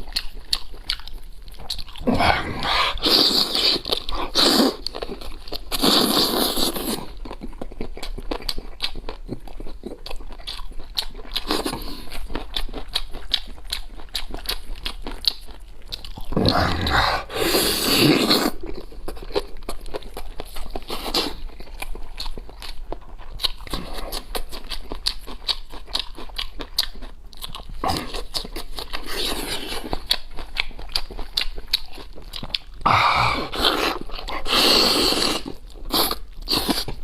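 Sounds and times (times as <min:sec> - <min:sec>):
wet chewing clicks and smacks: 0:00.0 - 0:17.3, 0:18.1 - 0:37.0
biting and tearing meat: 0:00.0 - 0:37.0.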